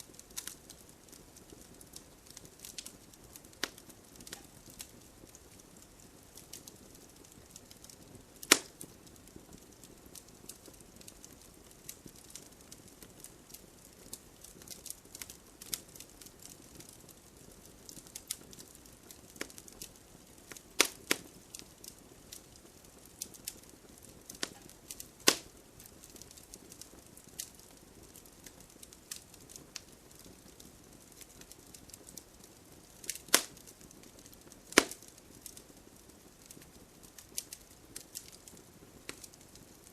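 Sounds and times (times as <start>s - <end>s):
wood fire crackling: 0.0s - 39.9s
logs popping: 8.4s - 8.8s, 20.5s - 21.3s, 24.3s - 25.5s, 33.0s - 33.7s, 34.3s - 35.6s.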